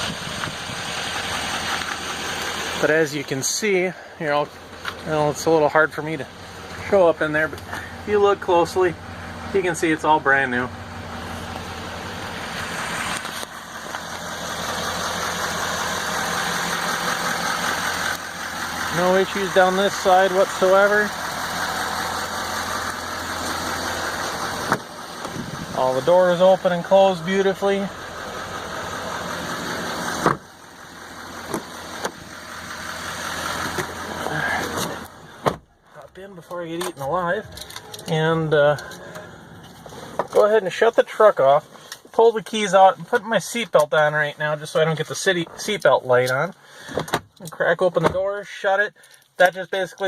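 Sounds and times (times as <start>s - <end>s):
diesel engine idling: 0.0s - 48.0s
truck door shutting: 24.6s - 25.6s, 30.2s - 30.6s, 31.4s - 32.2s, 33.6s - 35.7s.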